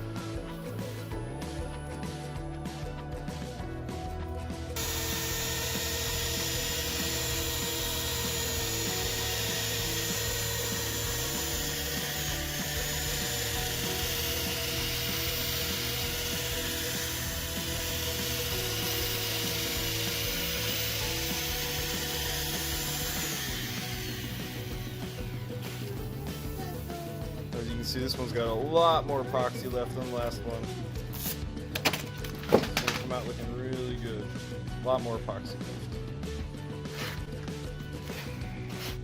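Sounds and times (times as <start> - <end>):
background music: 0.0 - 39.0
wood lathe tool cutting hiss: 4.8 - 26.5.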